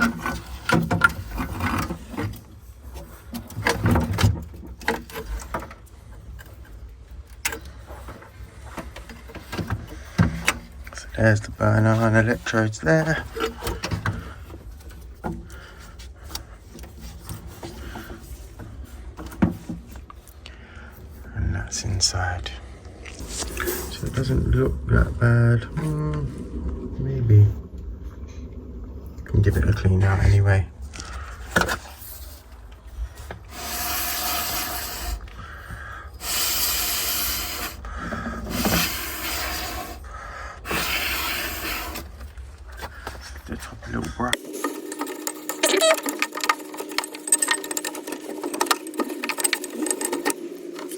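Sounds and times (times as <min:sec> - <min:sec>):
low hum: 0:00.0 - 0:50.9
sprayer hissing: 0:33.5 - 0:35.3, 0:36.1 - 0:37.8, 0:38.5 - 0:40.0, 0:40.7 - 0:42.1
metal parts clicking and knocking: 0:44.6 - 0:50.9.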